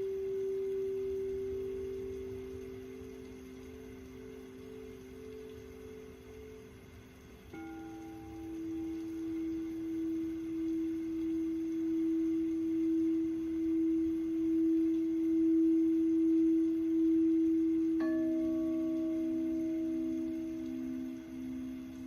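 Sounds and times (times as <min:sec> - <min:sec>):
second bowl struck lower tone: 0:00.0 - 0:06.9, 0:07.5 - 0:22.0
sound bowl ringing: 0:00.0 - 0:22.0.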